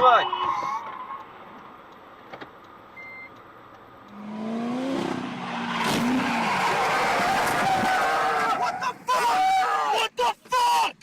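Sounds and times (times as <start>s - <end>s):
short beep: 3.0s - 3.4s
car engine revving: 4.0s - 8.5s.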